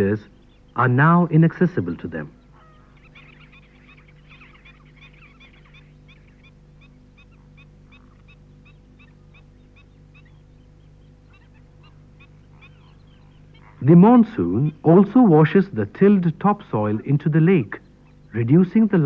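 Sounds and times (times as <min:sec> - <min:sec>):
steady low hum: 0:00.0 - 0:19.0
waterbirds calling: 0:00.0 - 0:19.0.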